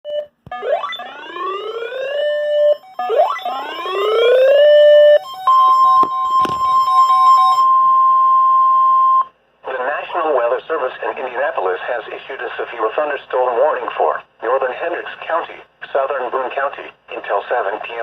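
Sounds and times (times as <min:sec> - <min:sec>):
steady high alarm tone: 0:00.1 - 0:09.3
rising electronic siren sweeps: 0:00.5 - 0:07.8.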